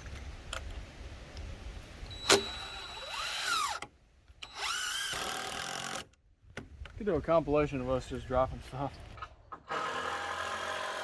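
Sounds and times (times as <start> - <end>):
power drill running: 4.4 - 6.0, 9.7 - 11.0.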